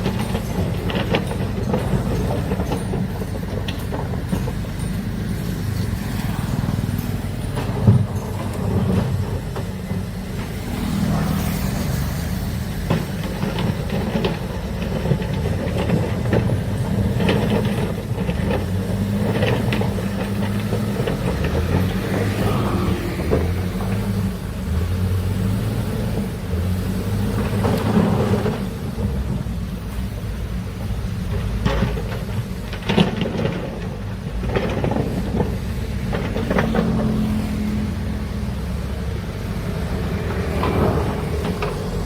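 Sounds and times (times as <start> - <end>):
metal knocks and clanks: 0.0 - 11.9, 31.2 - 37.8
excavator diesel engine: 0.0 - 42.0.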